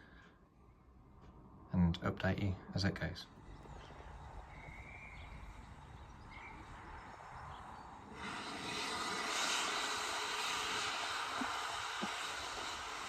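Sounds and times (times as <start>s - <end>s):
train rumbling: 3.2s - 13.0s
faint high chirps: 3.3s - 8.2s.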